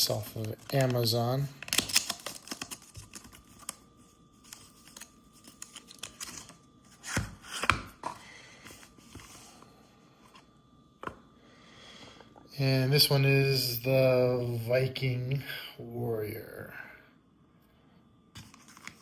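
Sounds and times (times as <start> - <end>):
packaging rustling: 0.1 - 9.4.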